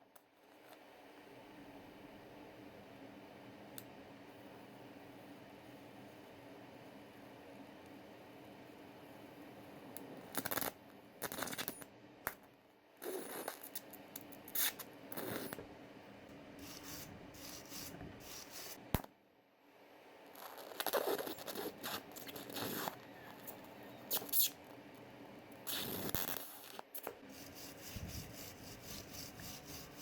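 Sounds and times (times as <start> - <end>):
scraping and rubbing on metal: 25.7 - 30.0.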